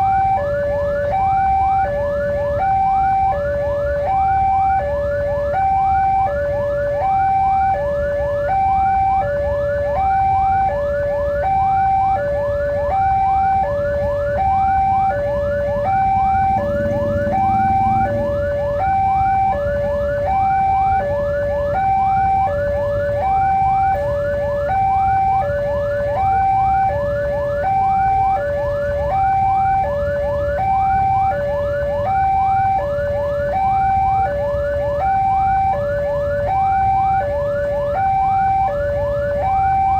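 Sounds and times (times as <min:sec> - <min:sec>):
two-tone crossing alarm: 0:00.0 - 0:39.9
low rumble: 0:16.0 - 0:18.8.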